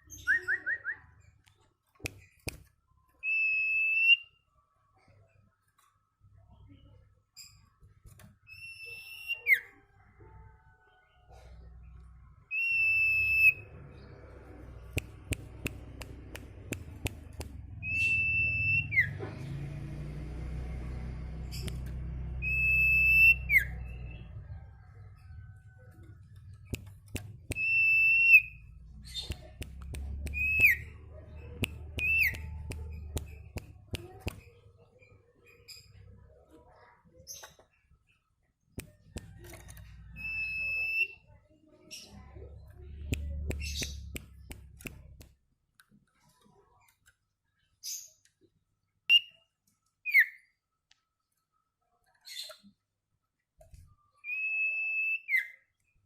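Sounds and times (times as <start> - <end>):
songbird drawn-out whistle: 3.2 - 4.4, 12.5 - 13.7, 17.8 - 19.2, 22.4 - 23.8, 27.5 - 28.6, 40.2 - 41.2, 54.2 - 55.6
bird sharp clicking notes: 14.7 - 19.1, 26.0 - 34.5, 42.8 - 45.4.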